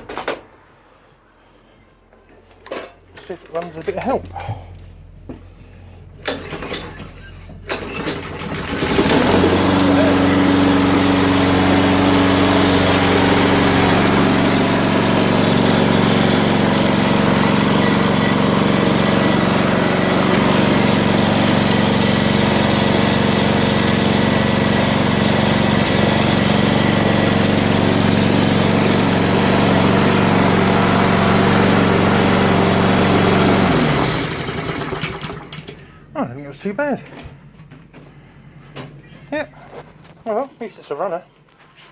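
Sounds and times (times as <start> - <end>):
lawn mower engine running: 6.2 - 36.0.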